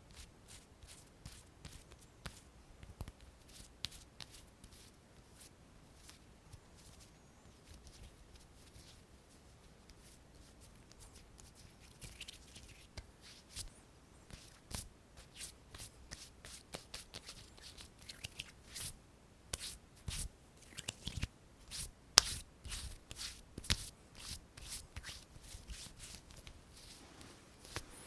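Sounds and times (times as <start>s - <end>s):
hands tapping and rubbing: 1.2s - 4.8s, 14.3s - 28.0s.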